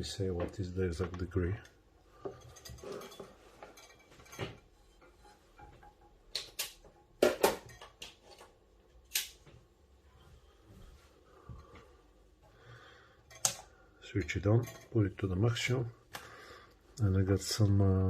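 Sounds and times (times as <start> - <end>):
hard objects clicking and knocking: 2.2 - 9.4.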